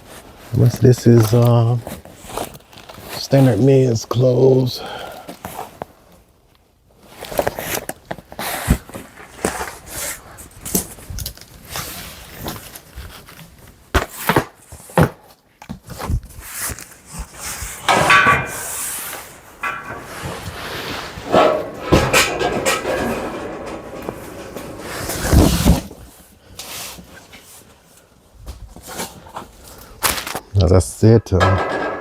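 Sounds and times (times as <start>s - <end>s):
rustling fabric and cardboard: 0.0s - 4.2s, 5.3s - 30.5s
knocks and clunks: 17.8s - 18.9s, 19.6s - 20.5s, 21.2s - 25.9s, 31.4s - 32.0s.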